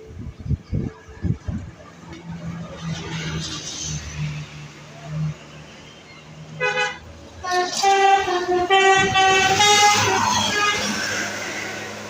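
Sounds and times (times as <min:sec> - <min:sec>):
musical bus horn: 0:06.6 - 0:11.2.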